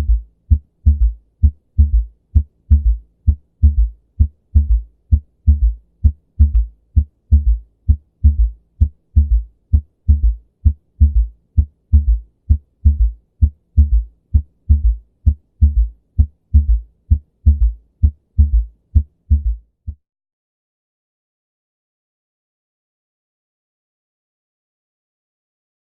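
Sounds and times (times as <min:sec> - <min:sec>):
heartbeat with gallop: 0:00.0 - 0:20.0.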